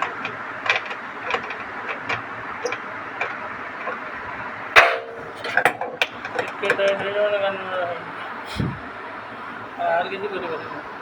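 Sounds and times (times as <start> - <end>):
tools clicking and tapping: 0.0 - 4.1, 4.8 - 7.2
loud metallic clang: 4.7 - 6.2.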